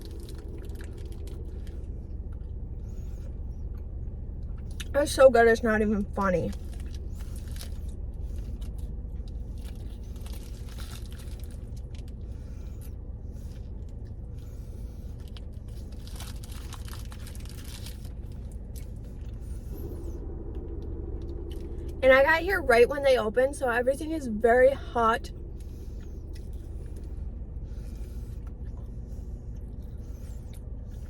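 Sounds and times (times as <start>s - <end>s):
person chewing food: 0.0s - 4.9s, 6.6s - 22.0s
steady low hum: 0.0s - 31.0s
small crunches: 6.5s - 14.1s, 15.1s - 19.8s
paper crinkling: 15.3s - 18.3s.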